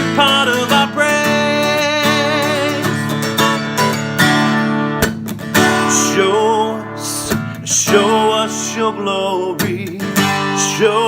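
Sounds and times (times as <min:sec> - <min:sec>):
person singing: 0:00.0 - 0:03.4, 0:05.7 - 0:11.0
acoustic guitar strumming: 0:00.0 - 0:11.0.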